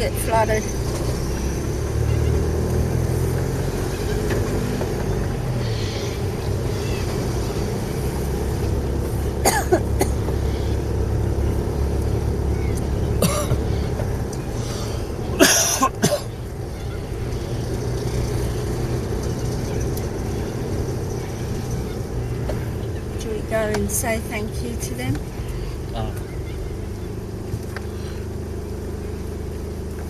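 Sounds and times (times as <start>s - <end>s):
car engine and road noise: 0.0s - 30.0s
person coughing: 9.4s - 10.2s, 13.2s - 13.6s, 15.4s - 16.3s.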